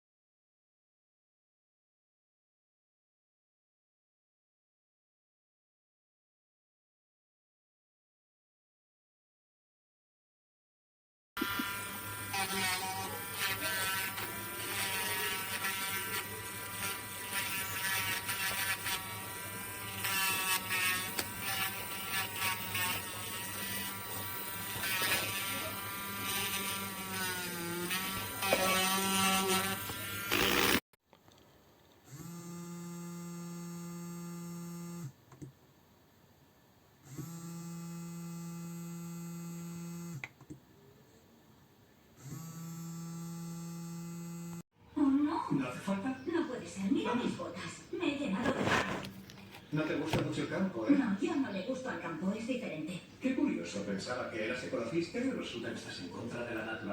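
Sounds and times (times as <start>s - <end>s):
electric nail drill motor: 11.4s - 30.9s, 32.1s - 35.2s, 37.0s - 40.3s, 42.2s - 44.6s.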